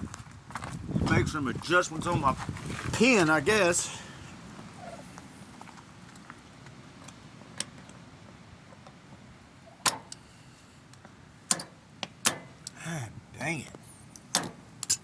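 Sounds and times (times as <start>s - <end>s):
metallic clicks of hand tools: 11.5s - 12.8s, 14.1s - 15.0s.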